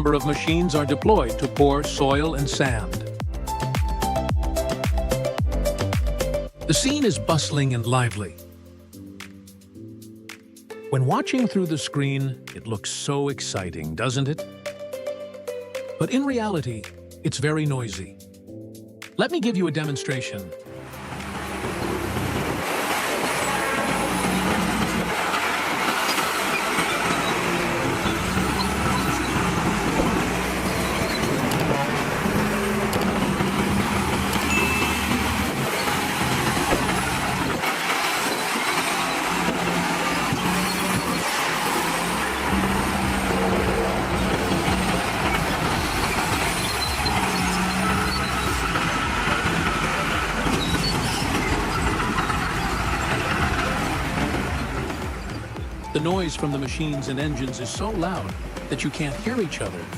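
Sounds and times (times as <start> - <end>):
heavy construction machinery engines: 0.0 - 3.0, 20.8 - 59.9.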